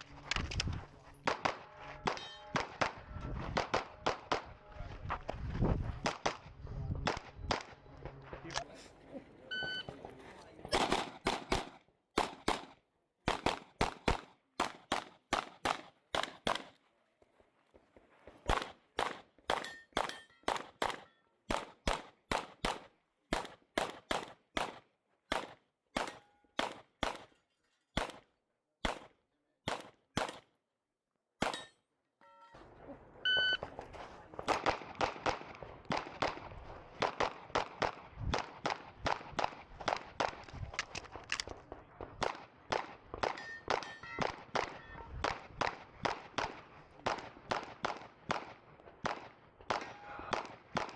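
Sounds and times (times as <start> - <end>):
metallic rings of steel targets: 2.0 - 2.6, 19.6 - 21.3, 31.5 - 32.7, 43.3 - 45.1
rapid pistol fire: 10.8 - 16.8, 18.5 - 27.3, 28.0 - 28.2, 28.8 - 29.1, 29.7 - 30.5
shot timer beep: 33.3 - 33.6.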